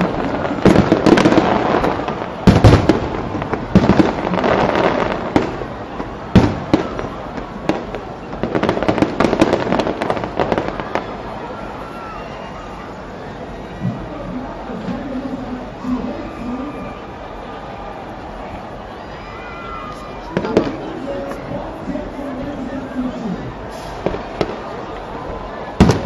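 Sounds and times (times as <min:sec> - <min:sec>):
fireworks booming: 0:00.0 - 0:11.5, 0:20.2 - 0:22.7, 0:23.5 - 0:26.0
crackling fireworks reports: 0:00.0 - 0:26.0.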